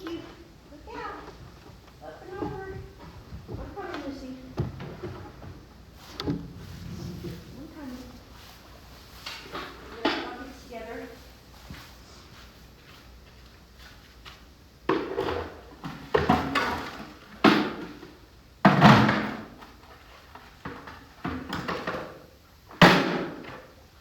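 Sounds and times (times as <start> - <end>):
heavy thumps and knocks: 0.9 - 8.2.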